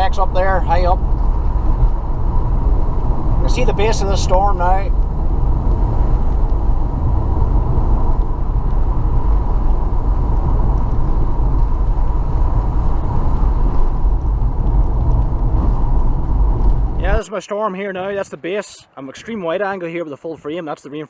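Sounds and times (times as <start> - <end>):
car cabin rumble: 14.3 - 17.3.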